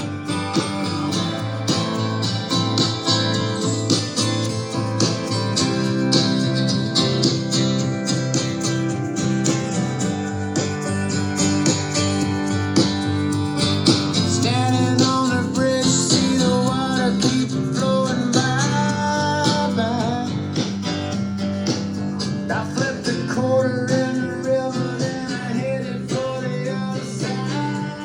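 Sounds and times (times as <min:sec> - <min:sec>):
acoustic guitar music: 0:00.0 - 0:28.0
melodic vocal line: 0:14.2 - 0:20.5, 0:22.4 - 0:28.0.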